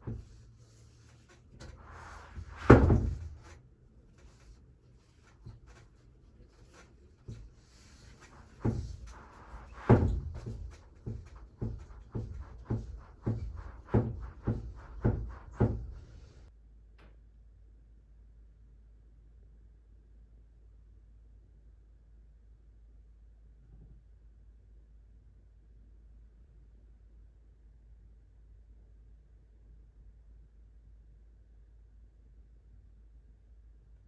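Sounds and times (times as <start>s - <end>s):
knocks: 1.6s - 3.6s, 8.2s - 16.5s
loud thump: 2.4s - 3.5s.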